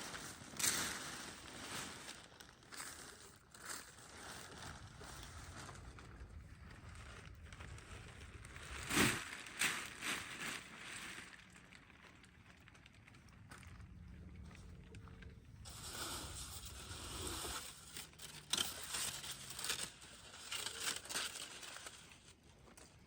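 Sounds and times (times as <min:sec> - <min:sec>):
low steady rumble: 0:11.3 - 0:20.5.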